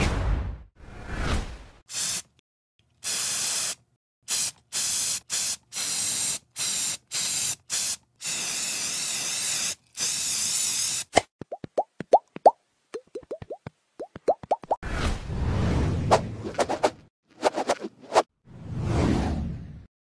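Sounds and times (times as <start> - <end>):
spray hissing bursts: 1.9 - 2.3, 3.0 - 11.1.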